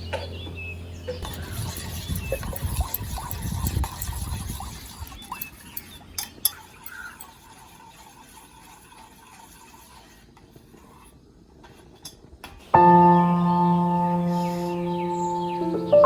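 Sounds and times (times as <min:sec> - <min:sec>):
utensils clinking against dishes: 0:01.1 - 0:04.2, 0:05.0 - 0:07.4.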